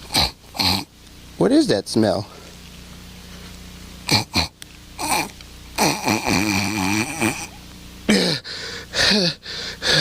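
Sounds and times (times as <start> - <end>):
sniffing and snorting through nose: 0.0 - 0.9.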